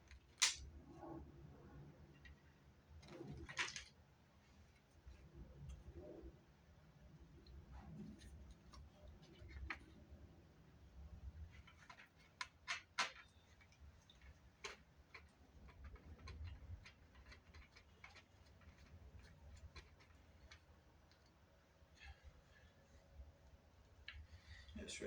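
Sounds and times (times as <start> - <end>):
plastic parts and tools clicking: 2.2 - 4.0, 11.5 - 21.4.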